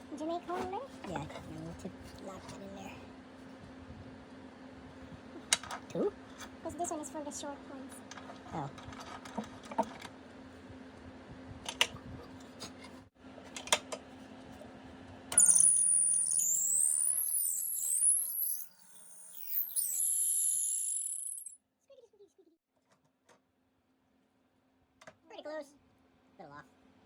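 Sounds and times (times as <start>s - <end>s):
drill bit squealing through wood: 15.4s - 21.6s
drill press motor humming: 15.4s - 21.6s.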